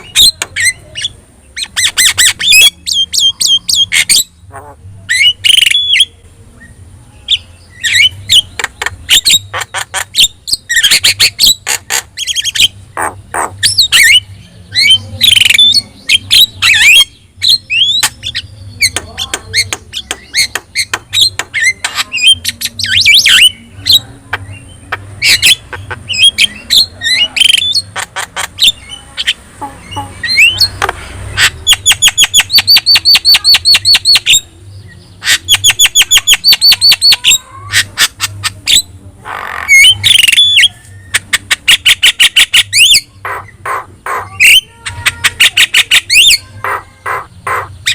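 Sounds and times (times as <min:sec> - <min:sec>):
bird whistling and squawking: 0:35.2 - 0:47.9.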